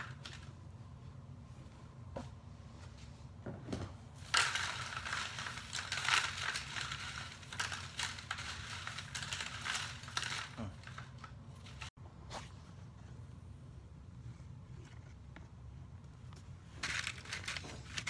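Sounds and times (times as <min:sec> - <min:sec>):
trash crinkling and crunching: 0:04.2 - 0:11.9.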